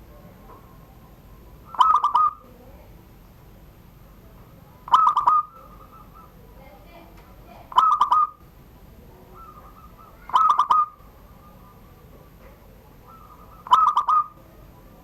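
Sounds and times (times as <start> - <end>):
dove cooing in staccato notes: 1.4 - 2.6, 4.8 - 6.6, 7.6 - 8.5, 9.2 - 15.0.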